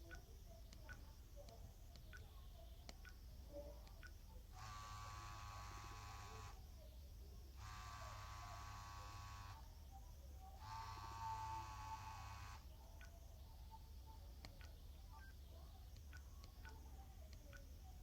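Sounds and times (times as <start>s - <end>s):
faint phone buzzing ring: 7.6s - 9.6s.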